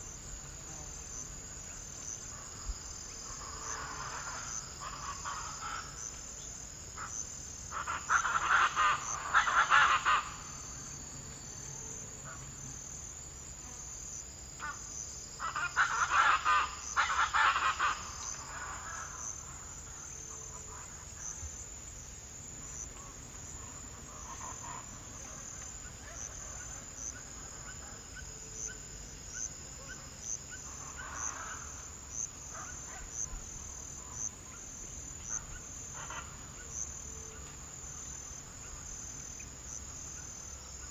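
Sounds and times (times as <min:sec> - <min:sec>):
crickets chirping: 0:00.0 - 0:40.9.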